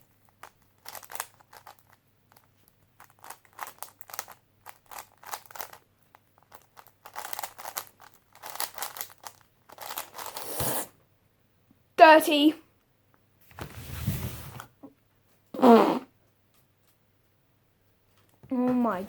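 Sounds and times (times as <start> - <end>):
puzzle cube plastic clicks: 0.2 - 10.4.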